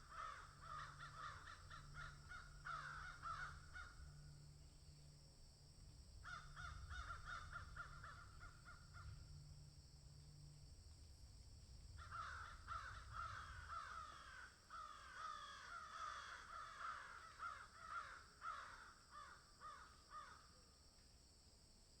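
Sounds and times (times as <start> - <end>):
crows cawing: 0.0 - 4.4, 6.2 - 9.3, 12.0 - 20.4.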